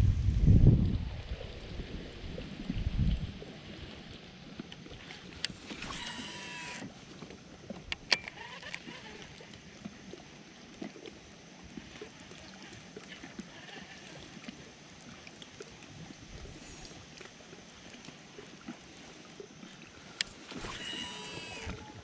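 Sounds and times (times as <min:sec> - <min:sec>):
wind buffeting microphone: 0:00.0 - 0:03.4
brief whirring: 0:05.4 - 0:06.8, 0:07.9 - 0:09.3, 0:20.1 - 0:22.0
handling clicks and knocks on kayak: 0:07.7 - 0:08.9.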